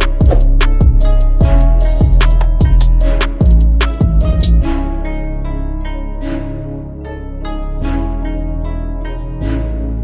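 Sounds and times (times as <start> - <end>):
low drum beat: 0.0 - 4.6
sustained instrument notes: 0.0 - 10.0.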